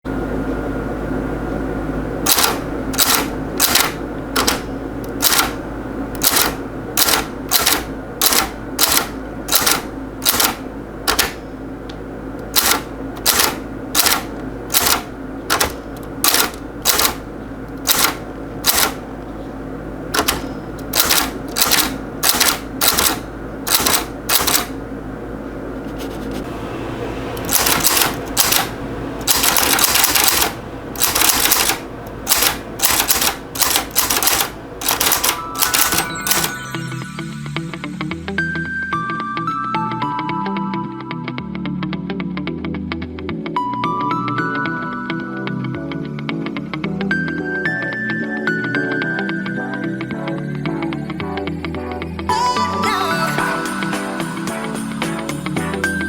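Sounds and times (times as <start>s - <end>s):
steady low hum: 0.0s - 39.6s, 45.0s - 56.0s
typewriter keys striking: 2.3s - 5.6s, 6.2s - 11.4s, 12.5s - 17.2s, 17.8s - 19.0s, 20.2s - 24.7s, 27.4s - 36.7s.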